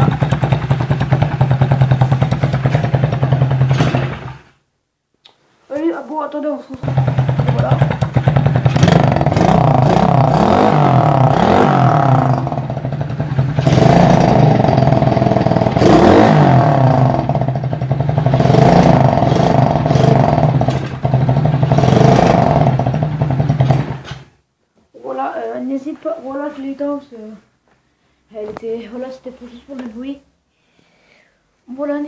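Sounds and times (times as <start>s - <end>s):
dirt bike engine revving: 6.8s - 24.2s.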